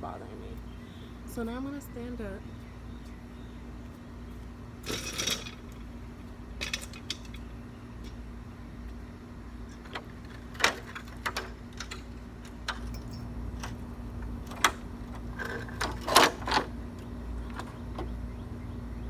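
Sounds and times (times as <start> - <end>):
faint steady hum: 0.0 - 19.0
sharp clicks and knocks: 9.7 - 18.2.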